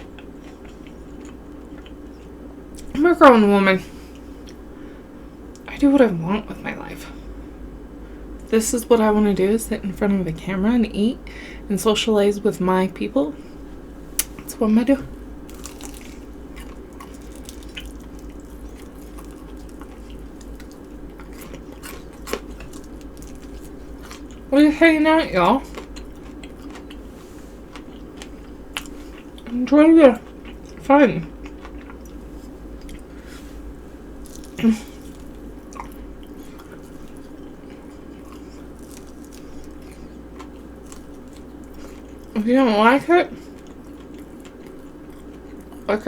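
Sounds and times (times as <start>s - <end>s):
person chewing food: 0.0s - 2.9s, 15.4s - 24.5s, 25.6s - 29.5s, 30.2s - 42.4s, 43.3s - 45.9s
low room hum: 0.0s - 46.0s.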